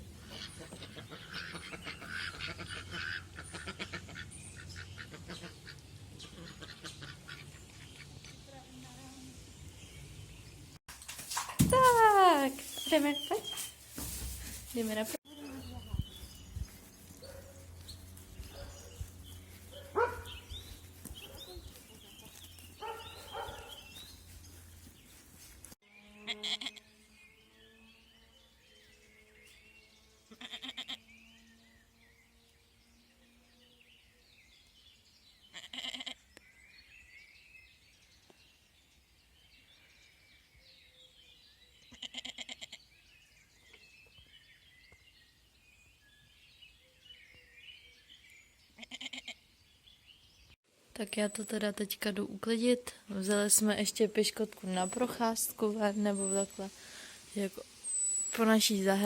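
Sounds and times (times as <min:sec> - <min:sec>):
small birds chirping: 0:11.4 - 0:59.0
young goat bleating: 0:26.2 - 0:26.8, 0:30.3 - 0:31.0, 0:35.5 - 0:36.2, 0:41.9 - 0:42.8, 0:48.8 - 0:49.4.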